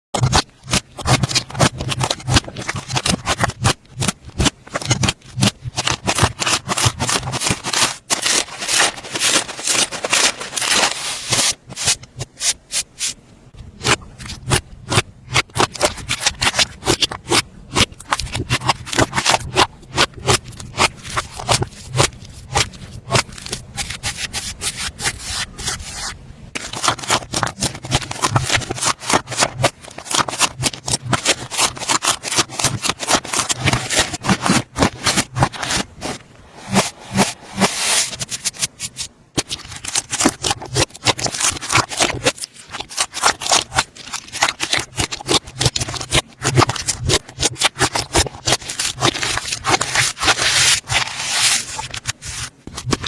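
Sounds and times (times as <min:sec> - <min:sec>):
slime crackling and popping: 0:39.4 - 0:51.0.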